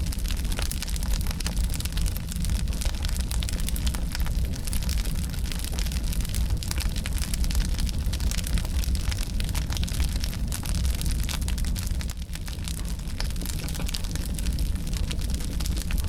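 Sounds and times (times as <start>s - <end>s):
burning logs crackling and popping: 0.0s - 16.0s
low rumble of flame: 0.0s - 16.0s.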